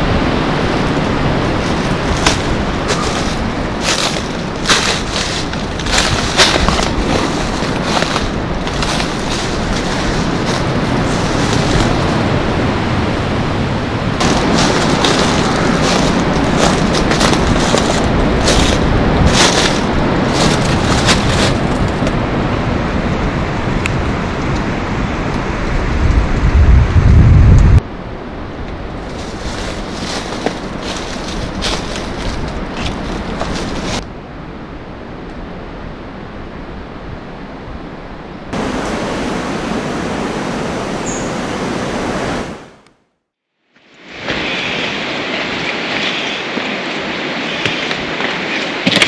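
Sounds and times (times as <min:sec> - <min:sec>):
wind buffeting microphone: 0:00.0 - 0:22.4, 0:25.8 - 0:27.8, 0:38.6 - 0:42.8
waterfall roaring: 0:14.2 - 0:21.9, 0:38.6 - 0:42.8.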